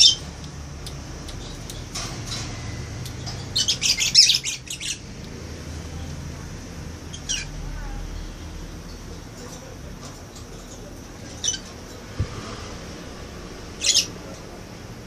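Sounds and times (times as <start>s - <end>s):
pet birds calling: 0.0s - 6.2s, 6.8s - 9.4s, 10.1s - 12.5s, 13.4s - 14.6s
bird squawks: 13.8s - 14.2s.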